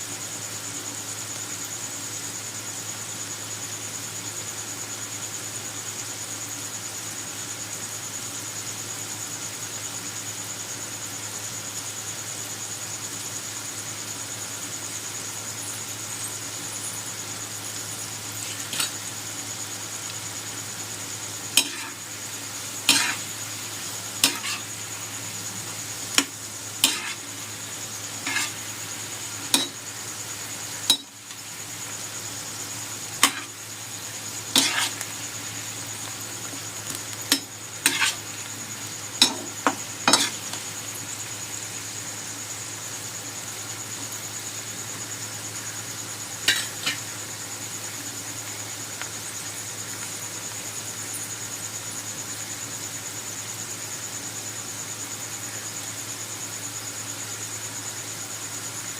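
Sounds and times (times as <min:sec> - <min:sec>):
fries sizzling in oil: 0:00.0 - 0:58.9
metal utensil scraping pan: 0:18.4 - 0:19.0, 0:21.6 - 0:22.0, 0:22.9 - 0:23.3, 0:24.2 - 0:24.7, 0:26.1 - 0:27.3, 0:28.2 - 0:28.6, 0:29.6 - 0:29.8, 0:30.9 - 0:31.1, 0:33.2 - 0:33.6, 0:34.5 - 0:35.0, 0:37.3 - 0:38.2, 0:39.2 - 0:40.4, 0:46.5 - 0:47.0.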